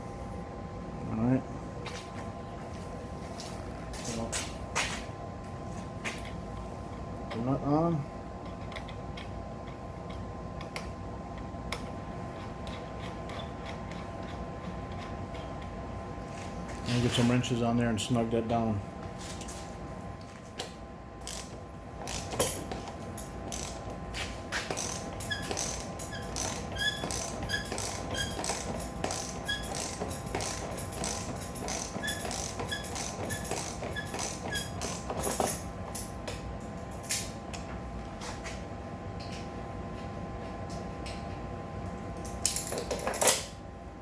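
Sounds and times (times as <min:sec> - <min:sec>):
wrench ratcheting click: 0:21.2 - 0:22.6, 0:23.2 - 0:23.8, 0:24.7 - 0:35.6
metal clicks and clinks: 0:21.2 - 0:23.8, 0:24.7 - 0:37.4, 0:42.2 - 0:43.5.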